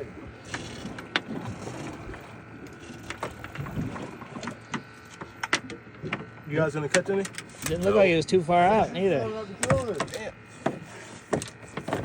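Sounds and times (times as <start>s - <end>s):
knocks and clicks of gear: 4.4s - 7.9s.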